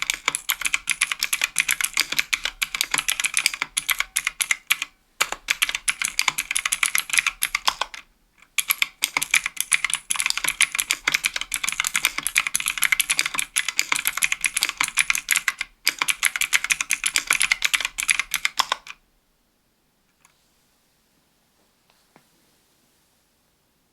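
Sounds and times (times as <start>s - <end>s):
clicky keyboard typing: 0.0s - 19.0s.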